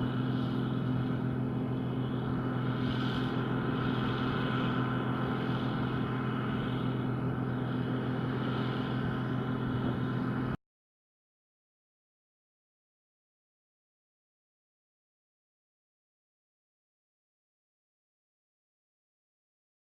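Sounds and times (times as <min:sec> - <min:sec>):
combine harvester engine drone: 0:00.0 - 0:10.6.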